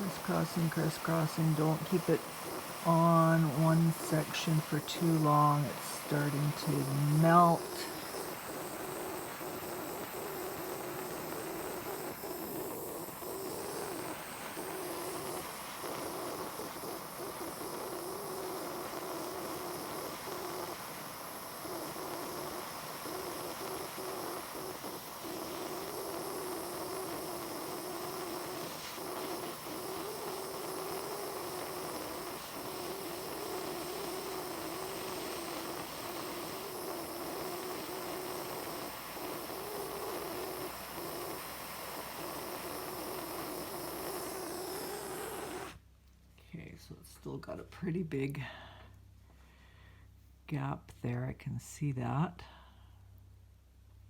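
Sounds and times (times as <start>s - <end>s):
torch flame roaring: 0.0s - 45.8s.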